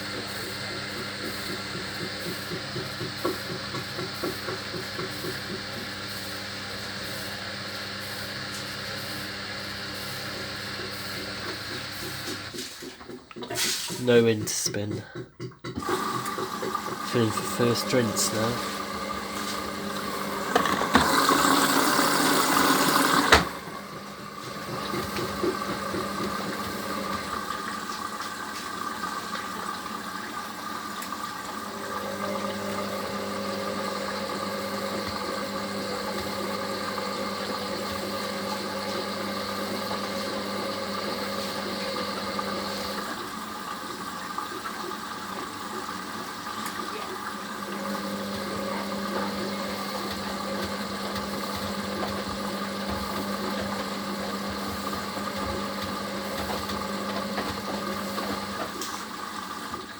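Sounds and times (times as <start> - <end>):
water rushing into washing machine: 0.0 - 59.9.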